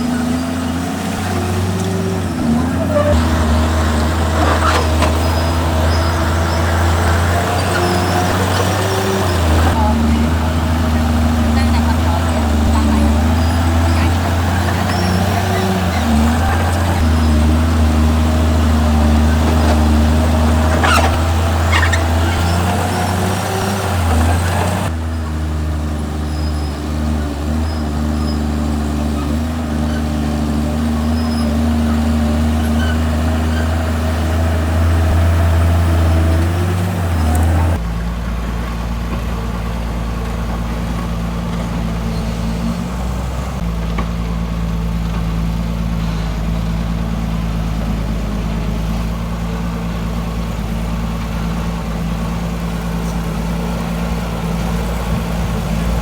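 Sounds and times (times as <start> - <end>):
metal clanks and squeals: 0.0 - 10.7, 11.6 - 25.5, 26.2 - 37.8, 41.1 - 43.7
heavy diesel machinery droning: 0.0 - 56.0.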